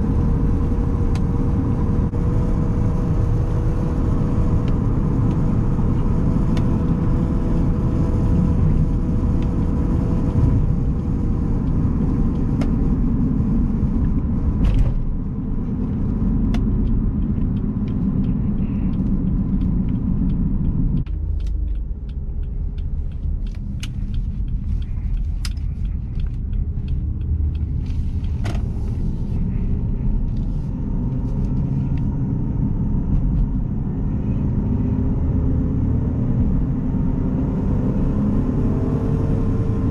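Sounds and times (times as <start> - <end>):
car engine rumbling: 0.0 - 39.9
road noise: 0.0 - 39.9
light clicks and ticks: 16.5 - 30.5.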